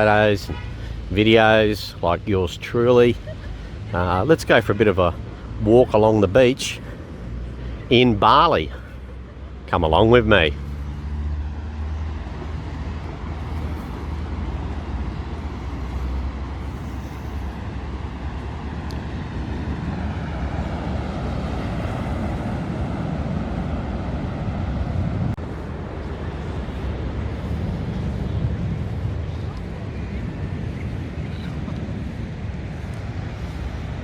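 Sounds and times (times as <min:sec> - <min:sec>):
wind on microphone: 0:12.1 - 0:34.0
surf breaking on beach: 0:18.4 - 0:34.0.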